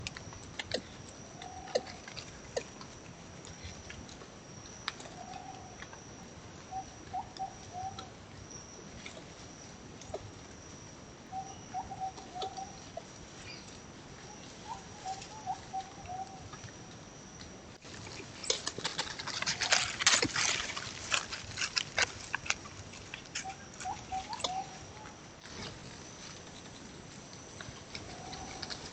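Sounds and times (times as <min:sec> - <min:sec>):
whistled bird notes: 0:11.3 - 0:12.8, 0:14.3 - 0:16.4, 0:23.4 - 0:25.0
crackling dry leaves: 0:11.7 - 0:28.9.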